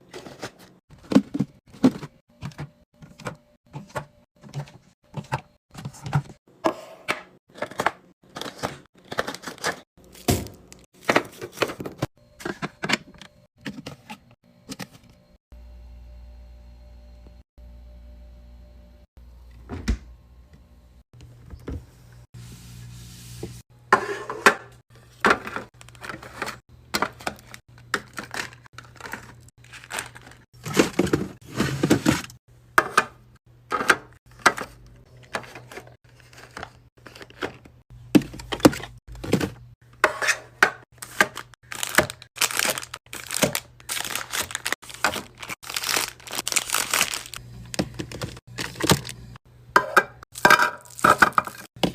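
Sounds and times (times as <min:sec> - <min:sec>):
plastic wrapper crinkling: 0:41.0 - 0:49.2.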